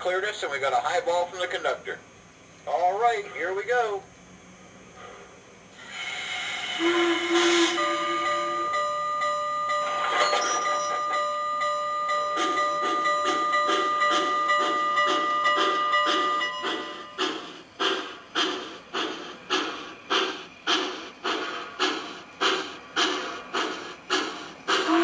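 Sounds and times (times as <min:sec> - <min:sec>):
steam locomotive exhaust chuffs: 0:00.0 - 0:25.0
model train bell ringing: 0:07.1 - 0:17.2.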